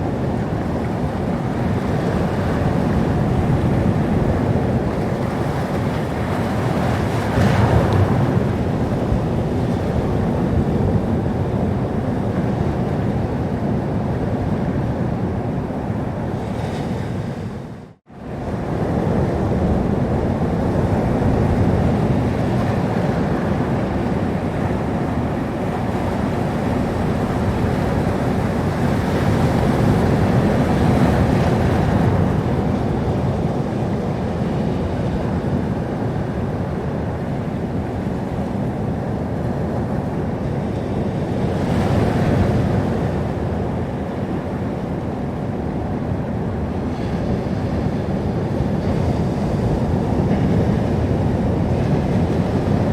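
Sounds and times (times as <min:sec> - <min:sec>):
sea waves breaking: 0:00.0 - 0:52.9.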